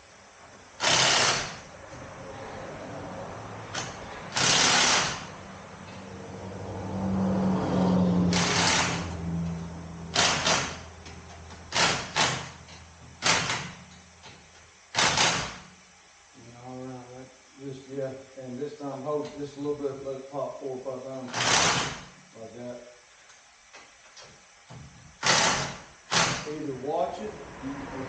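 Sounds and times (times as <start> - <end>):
impact wrench bursts: 0.7 - 1.8, 3.6 - 6.1, 8.3 - 15.8, 21.2 - 22.3, 24.9 - 27.0.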